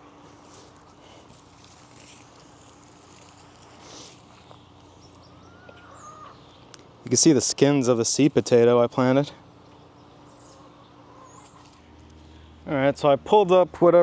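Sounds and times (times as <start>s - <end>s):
rustling of straw and soil: 0.0s - 14.0s
thin bird-like call: 5.0s - 6.7s.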